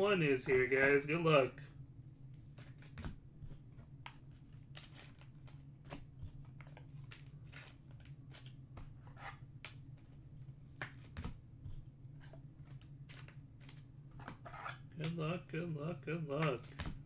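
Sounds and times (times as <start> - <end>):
cards rustling into plastic sleeves: 0.0 - 1.5, 2.2 - 11.3, 12.1 - 17.0
steady low hum: 0.0 - 2.6, 14.8 - 17.0.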